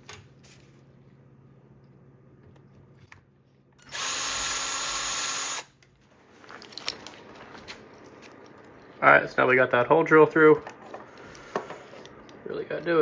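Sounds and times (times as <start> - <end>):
power drill drilling metal: 3.8 - 5.7.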